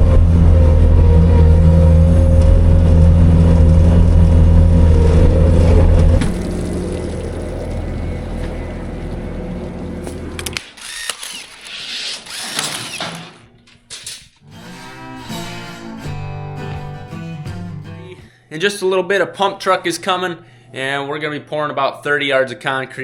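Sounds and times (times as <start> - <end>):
vehicle engine running: 0.0 - 10.5.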